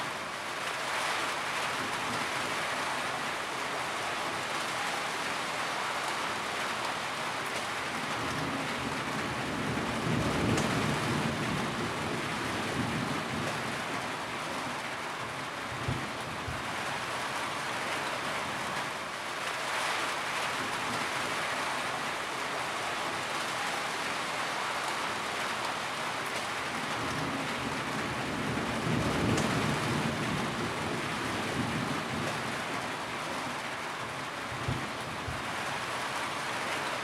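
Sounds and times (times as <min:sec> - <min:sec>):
low rumble of thunder: 0:08.1 - 0:14.1, 0:26.8 - 0:32.9, 0:34.5 - 0:35.5.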